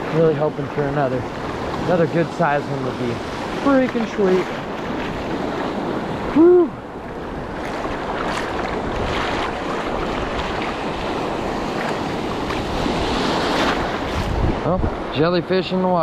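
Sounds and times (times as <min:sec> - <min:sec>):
surf washing up beach: 0:00.0 - 0:16.0
wind noise on microphone: 0:02.8 - 0:15.3
person shouting woo: 0:06.3 - 0:06.8.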